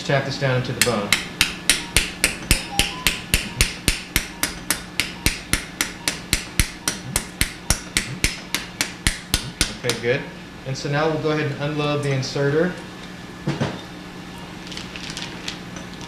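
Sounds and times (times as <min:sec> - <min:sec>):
mallet tapping metal inserter: 0:00.8 - 0:10.1.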